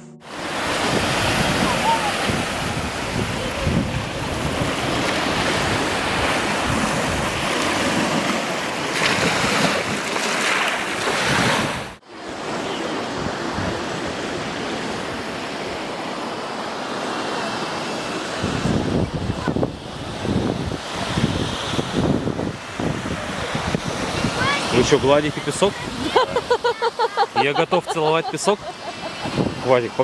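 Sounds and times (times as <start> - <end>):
surf washing onto sandy beach: 0.3 - 30.0
wind buffeting microphone: 0.5 - 8.3, 12.8 - 15.9, 18.3 - 27.0, 28.6 - 29.7.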